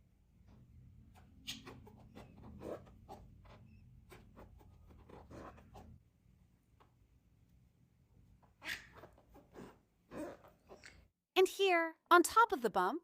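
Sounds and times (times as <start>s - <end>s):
crochet hook scratching yarn: 0.5s - 6.0s, 8.6s - 11.0s.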